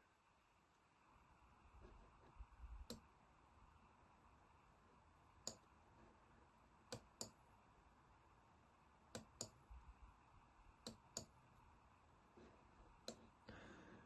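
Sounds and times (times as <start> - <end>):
computer mouse clicks: 5.4 - 5.7, 6.9 - 7.4, 9.1 - 9.6, 10.8 - 11.4, 13.0 - 13.4.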